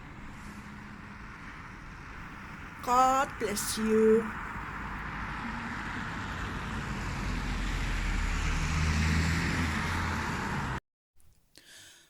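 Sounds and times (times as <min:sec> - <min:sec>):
low hum: 0:00.0 - 0:08.6.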